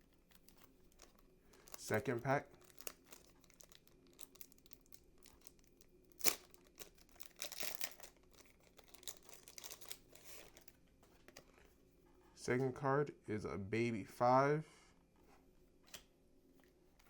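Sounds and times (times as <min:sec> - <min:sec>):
wrapper crinkling and tearing: 0:00.1 - 0:11.6.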